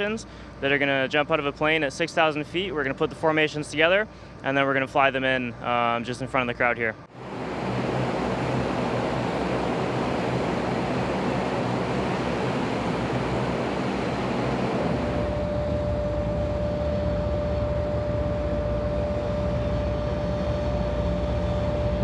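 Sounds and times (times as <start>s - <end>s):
aircraft engine rumble: 7.0s - 22.0s
steady rushing noise: 7.1s - 22.0s.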